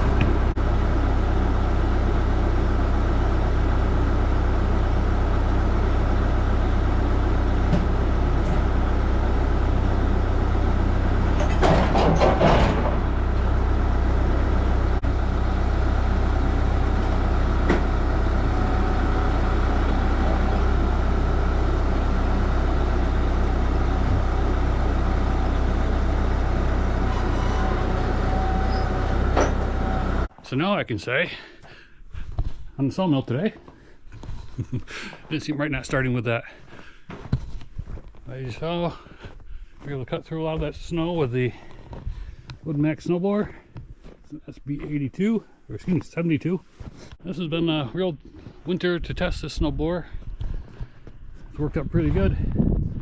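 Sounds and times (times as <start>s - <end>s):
engine clatter: 0.0s - 30.3s
tractor diesel engine running: 0.0s - 30.8s, 32.1s - 53.0s.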